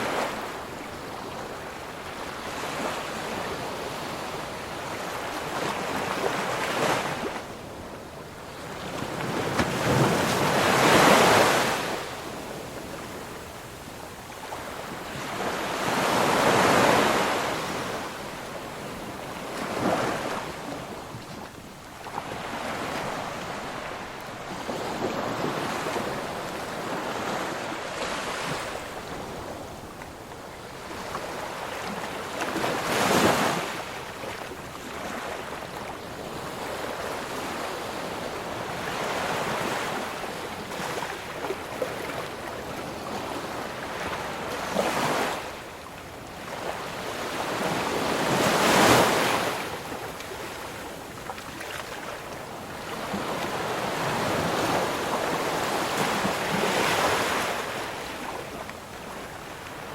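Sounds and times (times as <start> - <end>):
ocean waves washing on shore: 0.0 - 59.9
waves breaking: 8.6 - 13.5, 14.3 - 30.2, 46.4 - 59.9.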